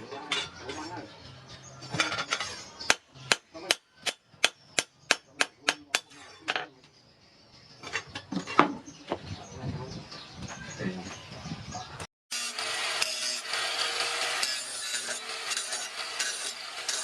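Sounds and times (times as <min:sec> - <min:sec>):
hammer striking metal: 0:02.8 - 0:06.6.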